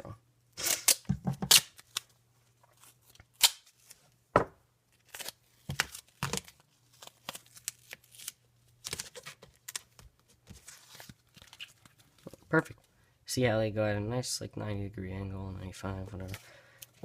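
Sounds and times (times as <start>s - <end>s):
duct tape ripping and crackling: 0.6s - 2.1s, 2.8s - 3.9s, 4.9s - 10.0s.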